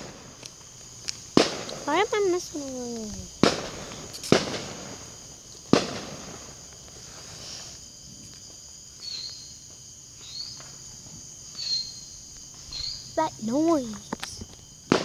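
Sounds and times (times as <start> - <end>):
fireworks bangs: 0.0 - 0.5, 1.1 - 7.4, 13.2 - 15.0
insects chorus: 0.0 - 15.0.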